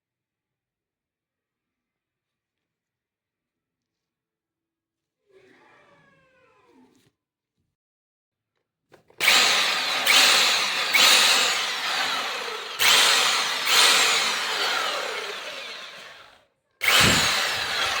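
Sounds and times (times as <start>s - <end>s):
rotary hammer motor starting and winding down: 9.2s - 18.0s.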